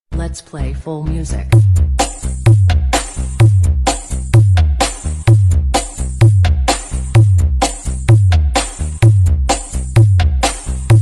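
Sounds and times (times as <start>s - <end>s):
bass-heavy dance music: 0.1s - 11.0s.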